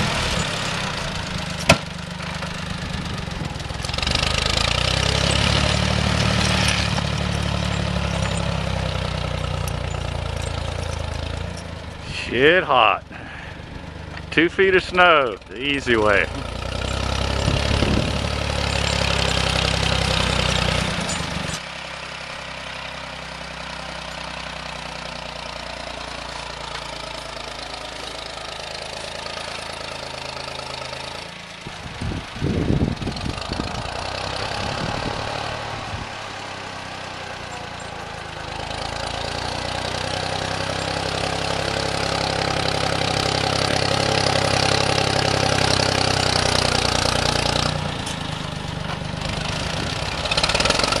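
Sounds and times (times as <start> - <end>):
snowplow engine running: 0.0 - 51.0.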